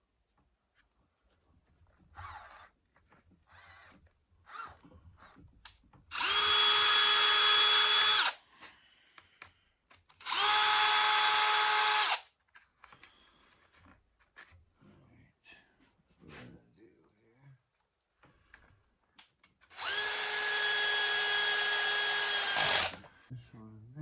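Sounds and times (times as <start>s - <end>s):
power drill driving screws: 6.1s - 8.4s, 10.2s - 12.3s, 19.7s - 23.2s.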